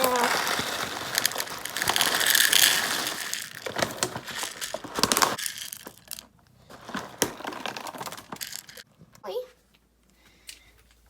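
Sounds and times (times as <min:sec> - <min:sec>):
cat food crinkling and crunching: 0:00.0 - 0:08.8
rustling: 0:00.0 - 0:08.8.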